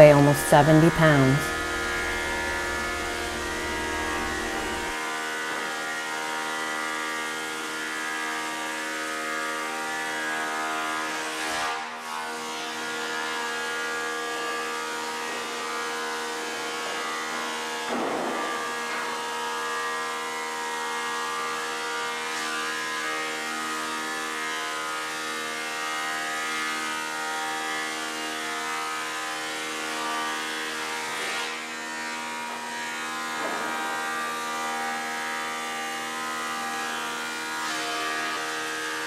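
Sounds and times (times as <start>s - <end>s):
thickness planer humming: 0.0s - 5.0s.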